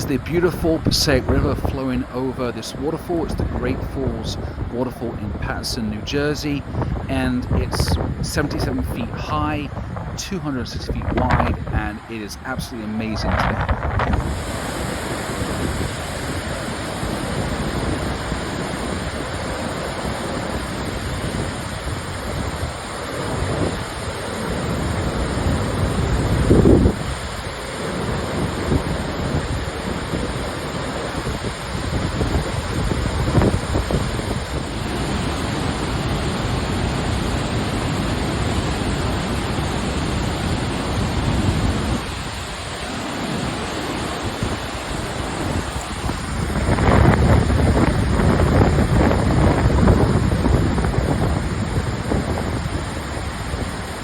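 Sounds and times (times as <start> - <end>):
wind buffeting microphone: 0.0 - 1.9, 2.8 - 54.0
waterfall rushing: 0.0 - 54.0.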